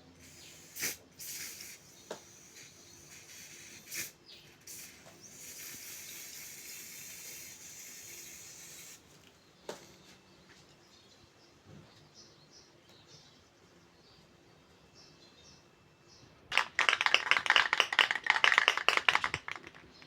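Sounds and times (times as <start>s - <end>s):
aerosol spray can hissing: 0.2s - 9.0s.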